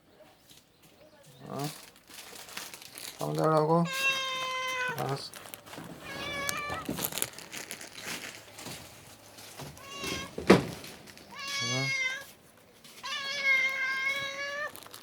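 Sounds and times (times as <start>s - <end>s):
cat meowing: 3.8s - 5.2s, 6.0s - 7.0s, 9.8s - 10.4s, 11.3s - 12.3s, 13.0s - 14.8s.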